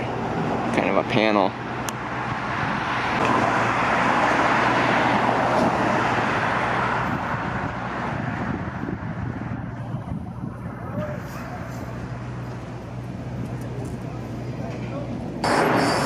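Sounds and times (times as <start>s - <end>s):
vehicle passing by: 2.0s - 14.6s.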